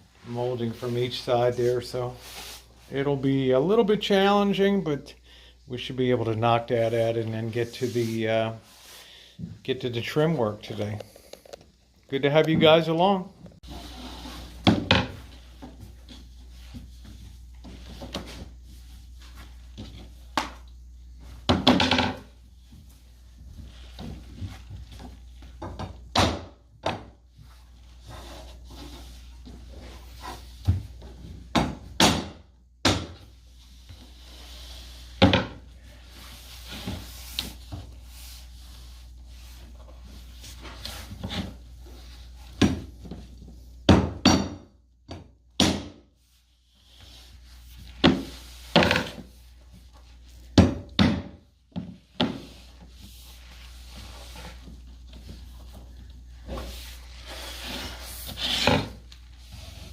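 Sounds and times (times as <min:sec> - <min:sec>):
knocks on wooden planks: 0:25.6 - 0:27.1, 0:43.9 - 0:46.0, 0:50.6 - 0:52.4.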